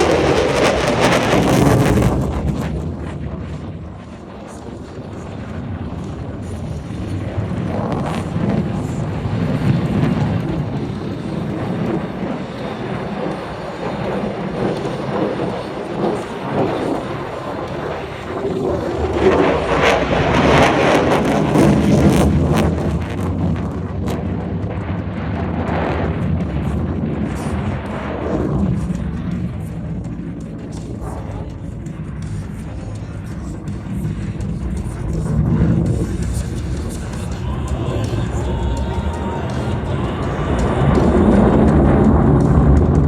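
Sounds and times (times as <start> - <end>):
jet engine crackling: 0.0 - 43.0
jet engine rumble: 0.0 - 43.0
music: 25.0 - 43.0.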